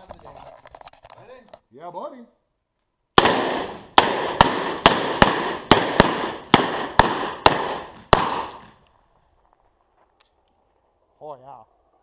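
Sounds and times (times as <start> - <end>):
revolver gunshots with echo: 3.2 - 8.8.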